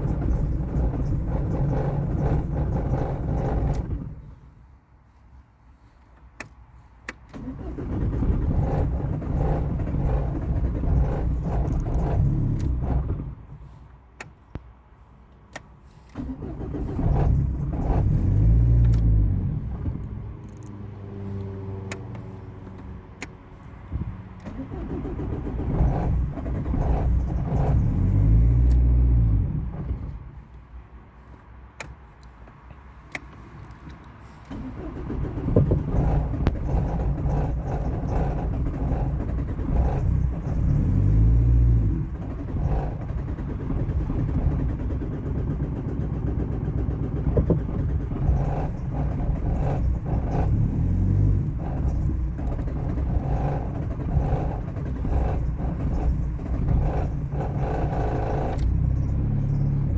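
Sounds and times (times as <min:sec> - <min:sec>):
car engine: 0:00.0 - 0:59.9
sharp clicks: 0:51.4 - 0:59.9.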